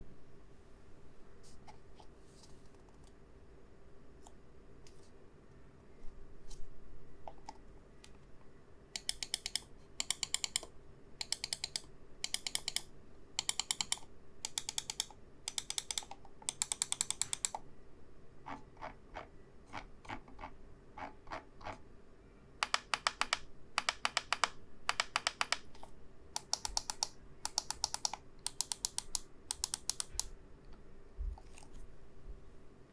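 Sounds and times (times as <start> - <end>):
mouse buttons clicking: 9.0 - 17.6, 22.6 - 30.3.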